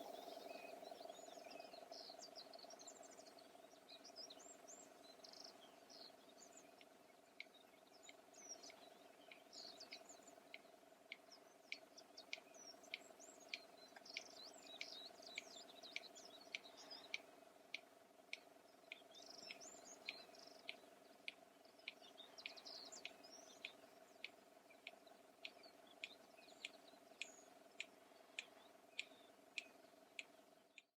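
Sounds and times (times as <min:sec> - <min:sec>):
insect drone: 0:00.0 - 0:30.7
birds chirping: 0:00.0 - 0:30.9
bird bill clicking: 0:06.5 - 0:30.9.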